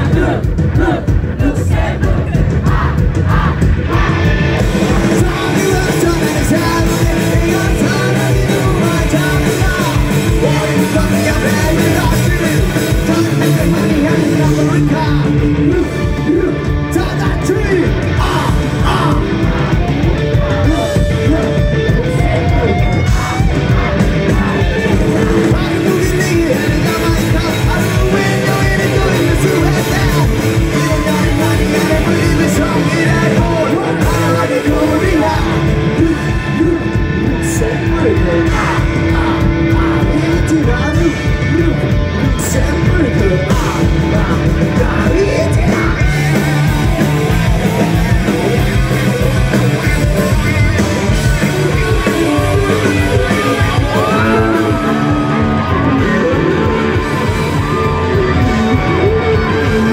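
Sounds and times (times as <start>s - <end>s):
punk rock band playing: 0.0s - 59.9s
person shouting vocals: 51.7s - 59.6s.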